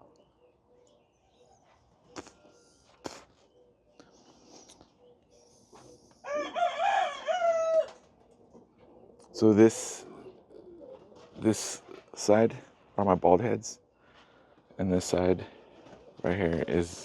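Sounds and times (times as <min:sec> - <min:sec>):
rooster crowing: 0:06.2 - 0:08.0.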